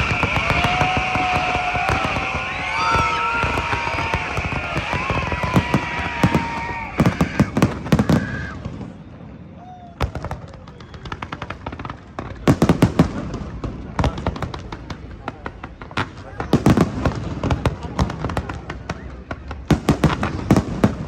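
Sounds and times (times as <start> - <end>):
fireworks whistles: 0.0 - 13.3
fireworks crackling bangs: 0.0 - 21.0
fireworks sharp cracks: 0.0 - 21.0.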